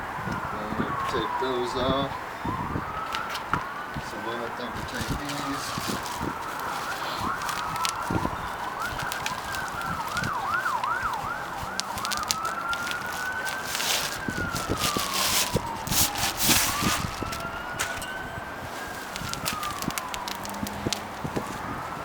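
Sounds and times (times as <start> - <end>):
ambulance sirens: 0.0 - 22.0
clatter of parts handled: 8.8 - 21.6.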